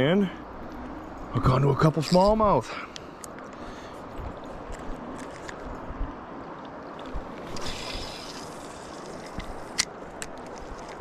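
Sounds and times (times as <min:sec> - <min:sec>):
flowing river water: 0:02.2 - 0:11.0.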